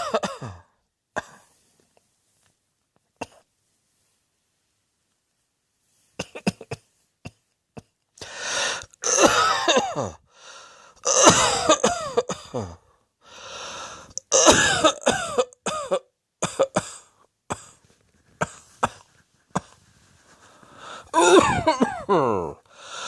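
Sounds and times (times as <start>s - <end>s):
person coughing hard: 0.0s - 1.5s, 9.0s - 10.2s, 11.0s - 12.8s, 14.2s - 17.8s, 21.1s - 22.6s
drawn-in breath: 8.2s - 8.9s, 10.3s - 11.0s, 13.2s - 14.2s, 20.0s - 21.2s, 22.7s - 23.0s.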